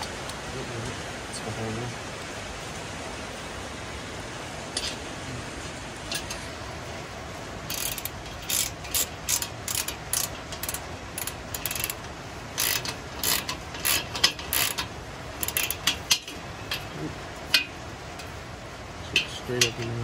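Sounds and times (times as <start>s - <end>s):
socket ratchet clicking: 7.7s - 12.0s, 12.6s - 16.8s.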